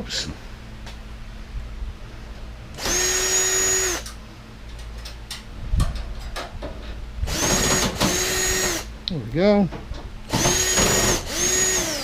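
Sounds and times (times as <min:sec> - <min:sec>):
power drill running: 0:02.8 - 0:04.0, 0:07.3 - 0:08.9, 0:10.3 - 0:12.0.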